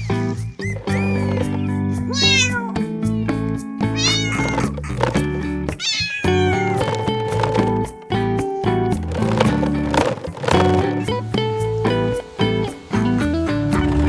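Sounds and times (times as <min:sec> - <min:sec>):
cat meowing: 0:00.0 - 0:02.8, 0:04.0 - 0:04.8, 0:05.8 - 0:06.8
background music: 0:10.6 - 0:14.0.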